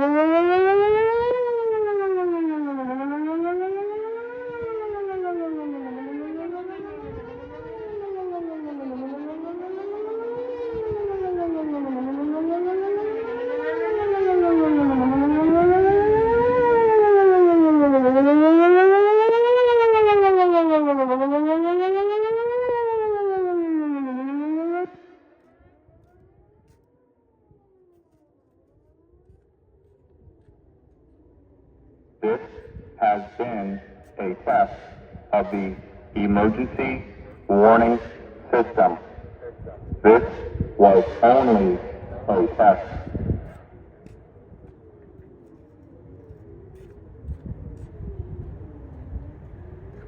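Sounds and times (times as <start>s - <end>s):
fainter siren wail: 0.0s - 50.0s
warning siren wailing: 0.0s - 50.0s.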